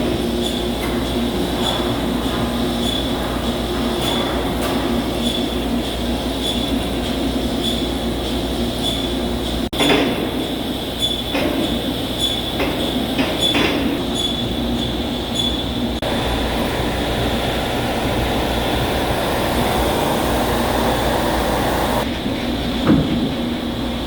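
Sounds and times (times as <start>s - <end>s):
high-pitched machine whine: 15.4s - 22.1s.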